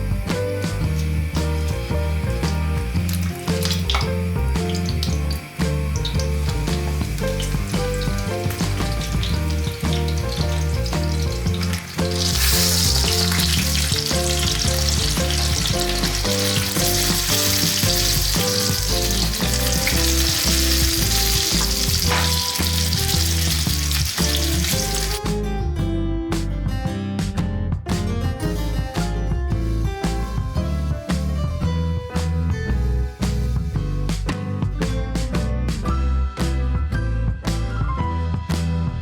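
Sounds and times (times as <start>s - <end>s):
food sizzling in hot oil: 0.0s - 25.2s
background music: 0.0s - 39.0s.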